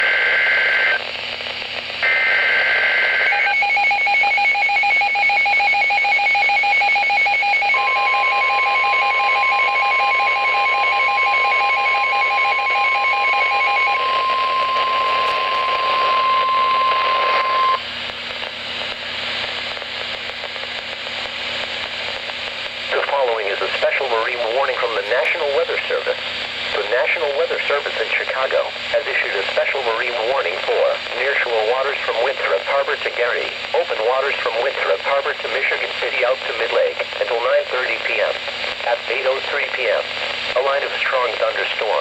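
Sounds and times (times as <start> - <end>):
radio hiss: 0.0 - 3.5, 7.6 - 42.0
steady warning tone: 2.0 - 17.8.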